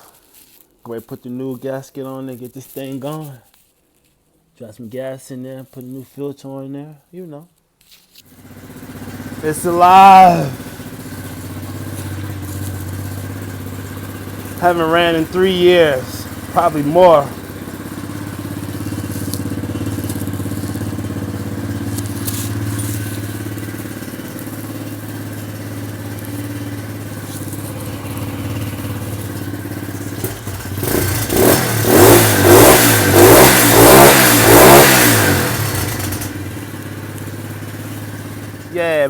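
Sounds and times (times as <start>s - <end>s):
dirt bike engine idling and revving: 8.3s - 39.0s.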